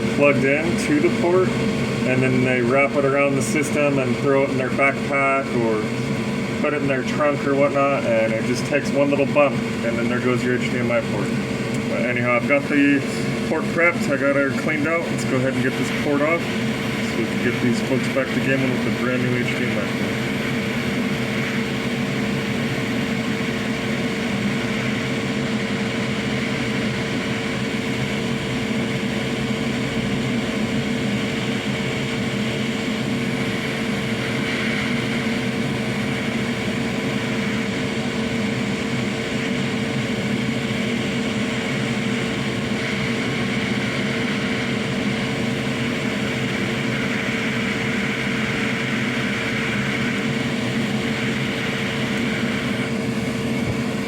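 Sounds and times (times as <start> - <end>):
constant hum: 0.0 - 54.0
hot air station blowing: 0.0 - 54.0.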